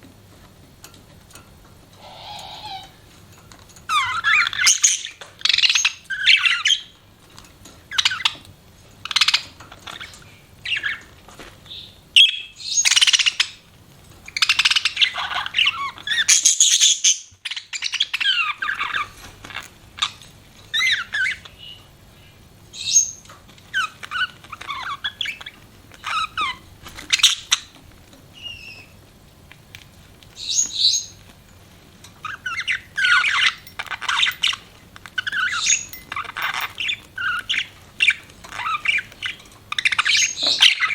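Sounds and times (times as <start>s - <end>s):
budgerigars chirping and warbling: 2.0s - 3.0s, 3.9s - 7.0s, 7.9s - 13.6s, 14.3s - 21.9s, 22.7s - 27.8s, 30.3s - 31.2s, 32.2s - 40.9s.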